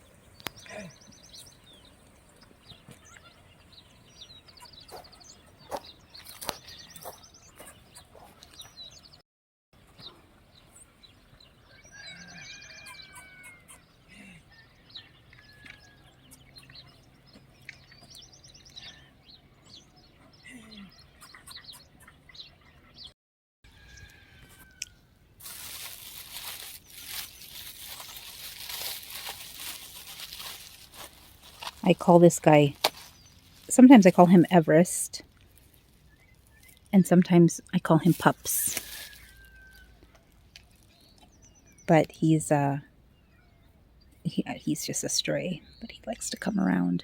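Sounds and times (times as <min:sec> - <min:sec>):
small birds chirping: 0:00.0 - 0:09.2, 0:09.8 - 0:23.2, 0:23.9 - 0:47.0.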